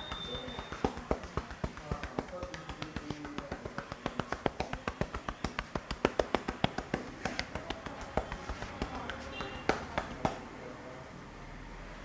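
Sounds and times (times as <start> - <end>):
hands slapping a head: 0.0 - 10.5.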